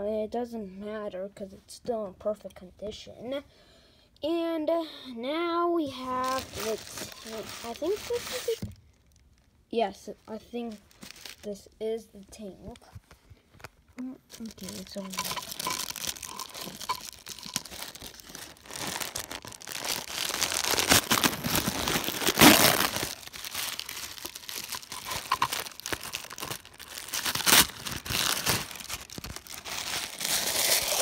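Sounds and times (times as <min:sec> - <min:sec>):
wrapping crinkled and torn: 0:06.0 - 0:09.6, 0:10.2 - 0:11.6, 0:13.6 - 0:31.0.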